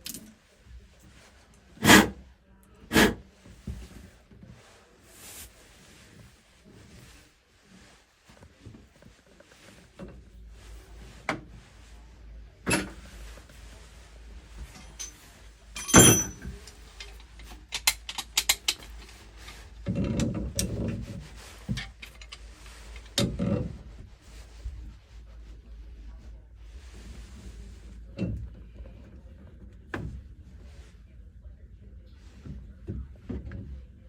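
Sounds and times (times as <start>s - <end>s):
rough scraping: 1.8s - 2.2s, 2.9s - 3.2s
metal tools clinking and knocking: 12.7s - 13.1s, 14.6s - 19.2s, 21.7s - 22.4s
sharp metal clank: 15.8s - 16.4s.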